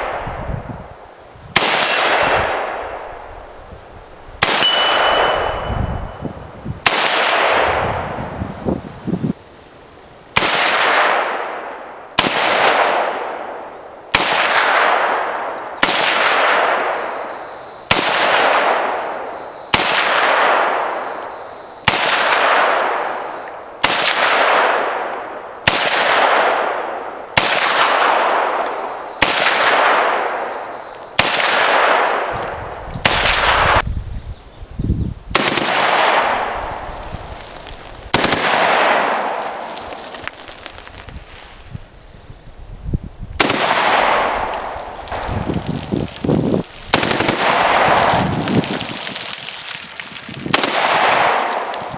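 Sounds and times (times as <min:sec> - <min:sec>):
rifle single shots with echo: 0:01.5 - 0:03.5, 0:04.4 - 0:06.2, 0:06.8 - 0:08.2, 0:10.4 - 0:33.8, 0:35.3 - 0:36.8, 0:38.1 - 0:40.3, 0:43.4 - 0:45.9, 0:46.9 - 0:48.8, 0:50.5 - 0:51.9.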